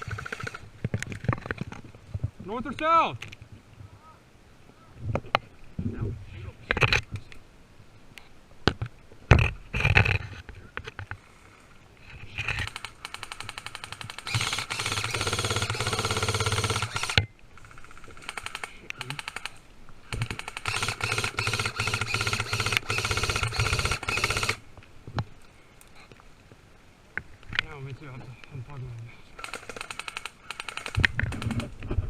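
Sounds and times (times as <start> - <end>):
airsoft guns firing full auto: 12.6 - 24.6, 29.4 - 31.7.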